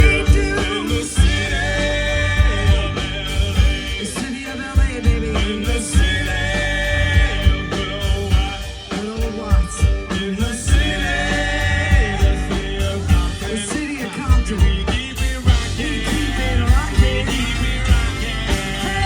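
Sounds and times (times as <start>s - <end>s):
heavy kick drum: 0.0s - 0.6s, 1.2s - 1.7s, 2.4s - 3.0s, 11.9s - 13.6s, 15.5s - 19.0s
live band playing upbeat groove: 0.0s - 19.0s.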